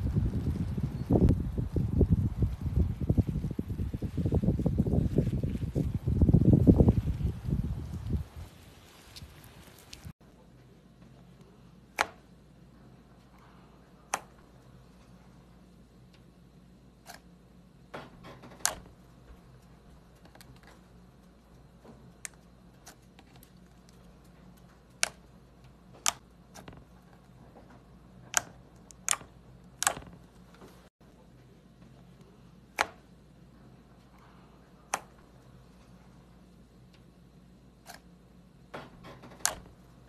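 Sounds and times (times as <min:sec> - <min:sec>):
sharp clicks and snaps: 0:22.2 - 0:26.8, 0:28.3 - 0:30.4.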